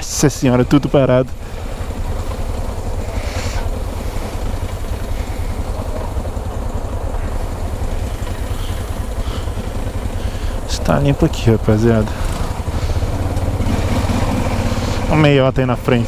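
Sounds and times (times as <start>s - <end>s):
motorcycle engine idling: 0.0s - 16.0s.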